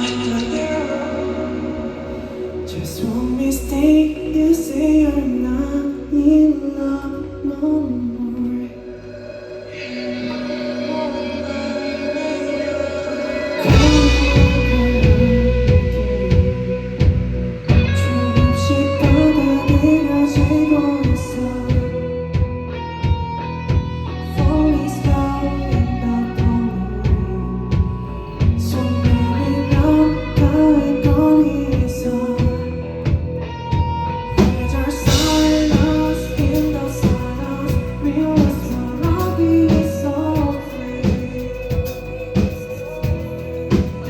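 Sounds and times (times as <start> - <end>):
electric guitar notes: 0.0 - 44.0
person singing: 0.0 - 44.0
rock band playing: 11.6 - 44.0.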